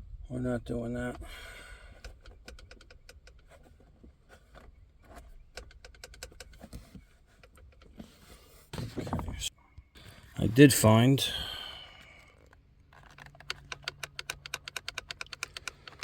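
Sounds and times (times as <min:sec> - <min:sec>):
small hard parts clicking and tapping: 0:01.9 - 0:08.1, 0:12.0 - 0:16.0.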